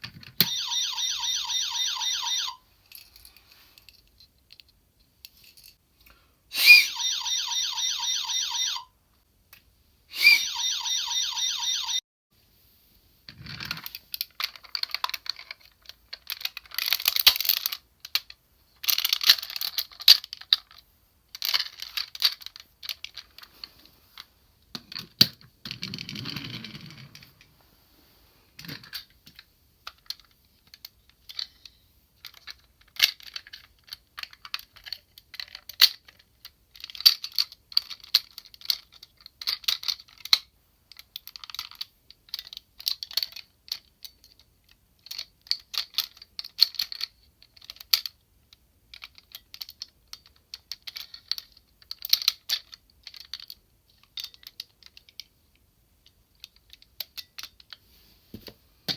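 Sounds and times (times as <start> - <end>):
plastic toy parts clicking: 13.6 - 23.5, 28.8 - 48.2, 48.9 - 55.3, 56.0 - 57.8.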